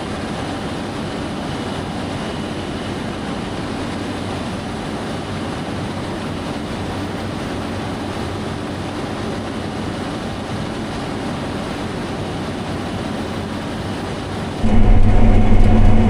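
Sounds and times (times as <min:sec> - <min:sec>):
tractor engine running: 0:14.6 - 0:16.0.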